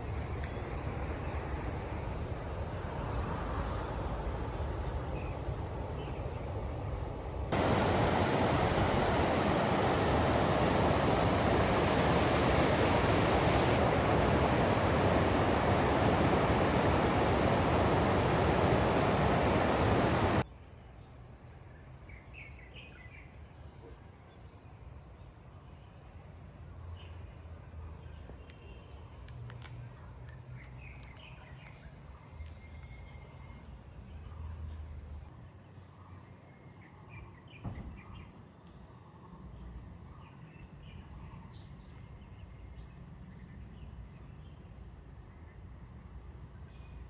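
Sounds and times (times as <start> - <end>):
outdoor ambience: 2.8 - 20.4
stream water rushing: 7.5 - 20.4.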